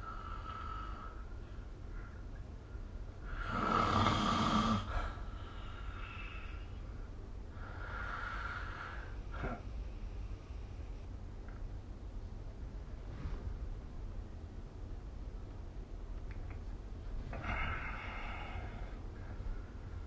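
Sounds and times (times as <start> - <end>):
quiet breaths: 0.0 - 11.9, 16.9 - 20.0
person snoring: 3.4 - 4.9.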